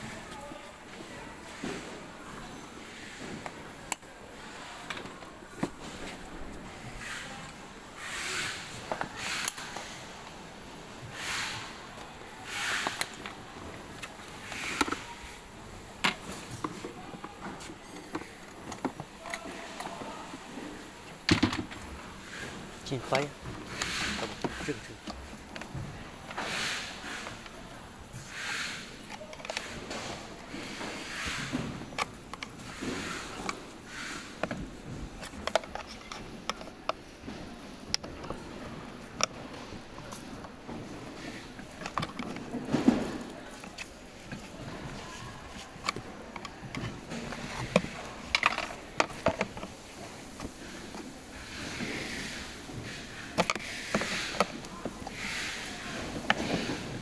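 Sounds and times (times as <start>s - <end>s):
tool and part clicks and knocks: 14.0s - 15.3s, 21.2s - 21.8s.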